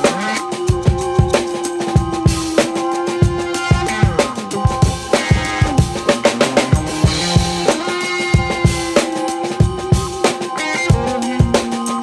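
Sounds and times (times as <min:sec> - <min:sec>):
held instrumental tones: 0:00.0 - 0:12.0
bass drum beat: 0:03.2 - 0:07.8.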